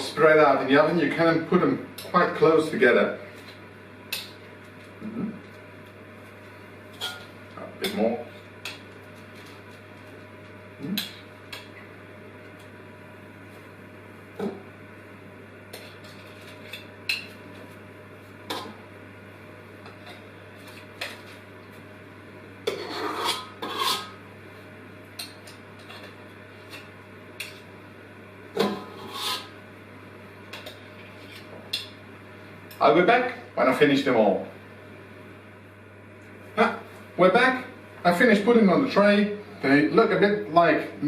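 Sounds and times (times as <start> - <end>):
spoon scraping a mixing bowl: 22.7 - 24.2, 28.6 - 29.6.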